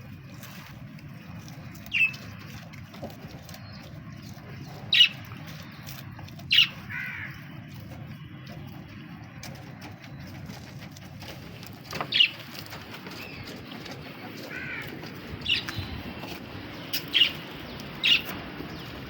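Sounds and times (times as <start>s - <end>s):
steady low rumble: 0.0s - 19.0s
bird giving harsh calls: 6.5s - 7.4s, 14.5s - 16.0s, 16.8s - 18.8s.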